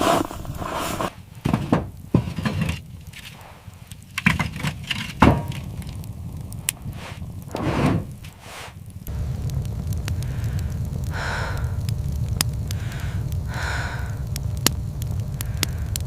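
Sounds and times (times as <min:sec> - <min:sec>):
steady low rumble: 0:00.0 - 0:16.0
irregular thuds and knocks: 0:01.0 - 0:03.4, 0:04.2 - 0:06.0, 0:06.8 - 0:08.4.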